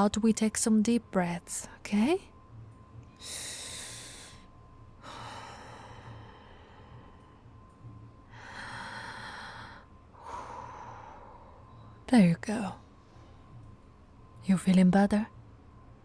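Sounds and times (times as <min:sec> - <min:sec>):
woman breathing deeply: 0:03.2 - 0:07.7, 0:08.3 - 0:12.0.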